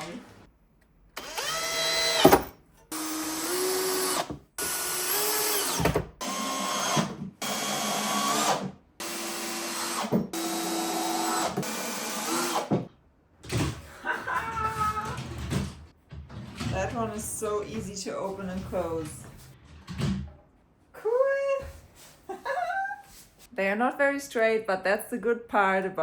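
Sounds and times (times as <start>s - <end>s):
cordless drill spinning: 1.2s - 12.7s.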